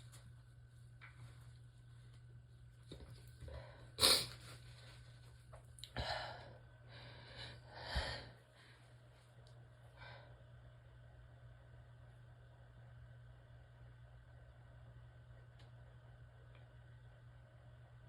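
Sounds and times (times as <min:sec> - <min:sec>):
person sneezing: 0:04.0 - 0:04.4
person breathing: 0:06.0 - 0:09.0.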